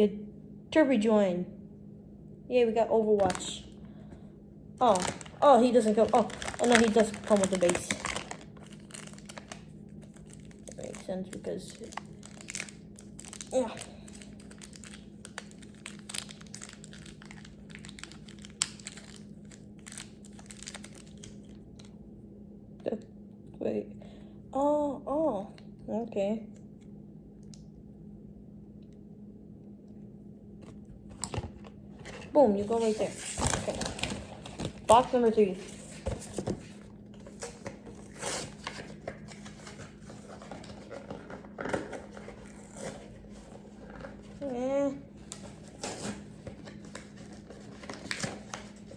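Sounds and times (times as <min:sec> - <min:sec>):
steady low hum: 0:00.0 - 0:48.9
plastic packaging crinkling: 0:03.2 - 0:03.6, 0:04.8 - 0:21.9, 0:30.6 - 0:48.9
wrapping rustling: 0:03.2 - 0:03.6, 0:04.8 - 0:21.9, 0:30.7 - 0:48.9.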